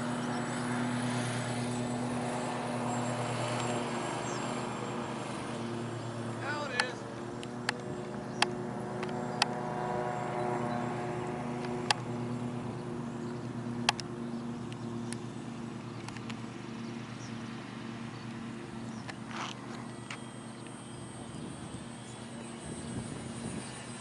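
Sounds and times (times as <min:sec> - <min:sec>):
model airplane motor humming: 0:00.0 - 0:24.0.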